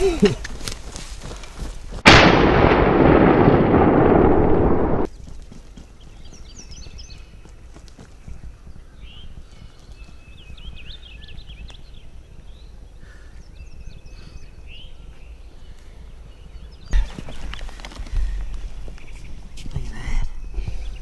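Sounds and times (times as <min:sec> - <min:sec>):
shotgun shot: 0:02.0 - 0:05.1
low rumble: 0:02.1 - 0:05.1
songbirds chirping and whistling: 0:05.0 - 0:21.0.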